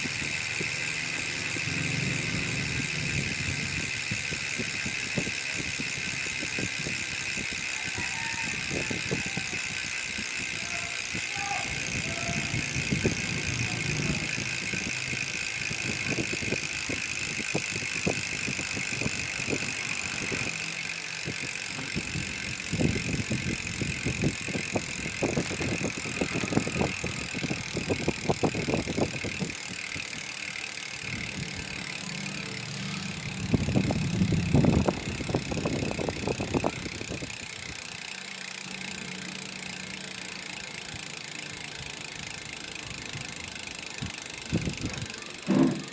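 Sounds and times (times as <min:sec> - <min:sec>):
bicycle hub clicking: 0:00.0 - 0:45.9.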